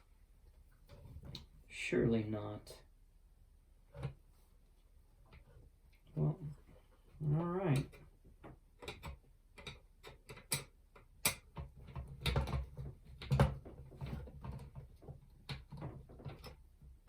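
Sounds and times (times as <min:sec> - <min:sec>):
plastic parts clicking and knocking: 0:07.7 - 0:17.0.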